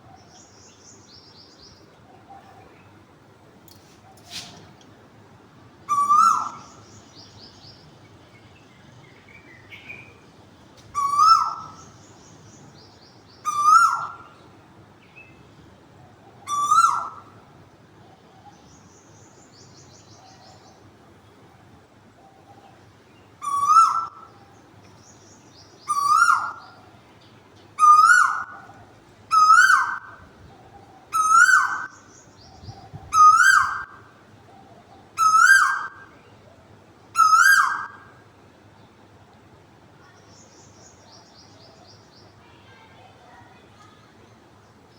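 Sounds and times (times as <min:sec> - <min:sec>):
cuckoo calling: 0:05.9 - 0:06.9, 0:10.9 - 0:12.0, 0:13.4 - 0:14.4, 0:16.3 - 0:17.4, 0:23.4 - 0:24.6, 0:25.8 - 0:26.8, 0:27.8 - 0:36.1, 0:37.2 - 0:38.1.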